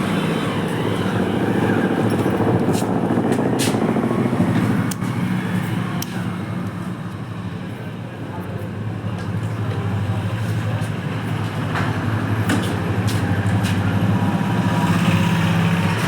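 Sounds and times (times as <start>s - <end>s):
motorcycle engine running: 0.0s - 7.6s.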